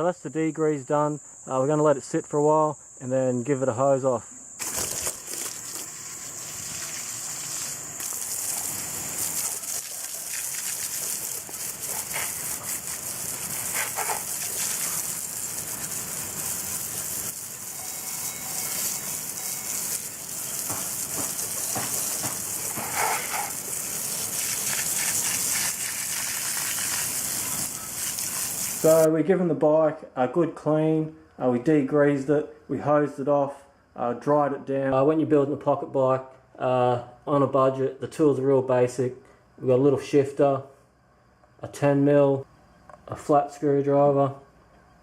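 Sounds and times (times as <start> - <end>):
garden hose spraying water: 4.6 - 29.1.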